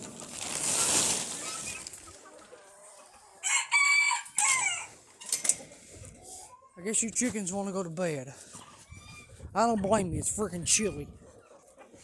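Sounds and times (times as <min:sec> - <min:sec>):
rustling noise: 0:00.0 - 0:02.4
rooster crowing: 0:03.4 - 0:04.9.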